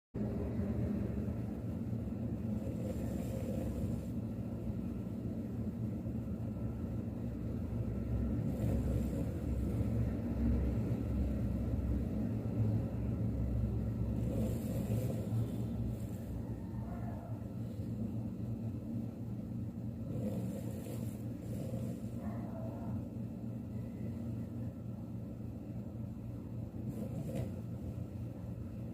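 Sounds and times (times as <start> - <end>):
dog snoring: 2.4 - 4.4, 8.2 - 11.4, 14.0 - 18.3, 20.0 - 23.0, 26.7 - 28.2.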